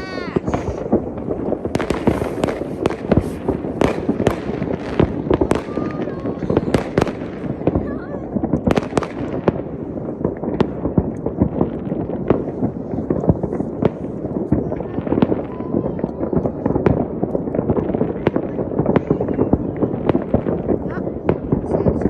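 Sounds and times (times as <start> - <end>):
sharp loud cracks: 0.0 - 9.6
fireworks crackling and banging: 0.0 - 22.0.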